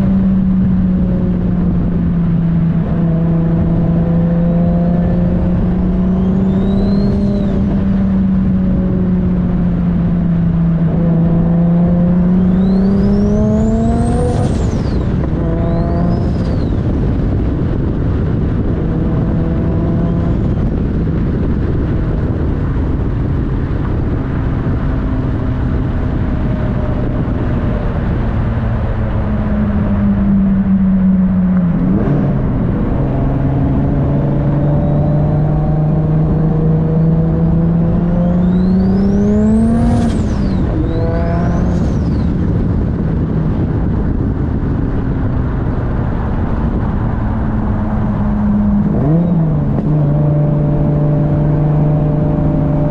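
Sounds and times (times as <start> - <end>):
car engine revving under load: 0.0 - 52.9
turbo whistle: 6.2 - 7.6, 38.4 - 39.1.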